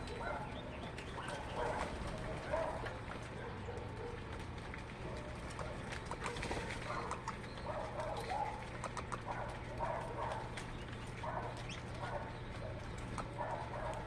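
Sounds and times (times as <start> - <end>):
birds calling: 0.0 - 14.0.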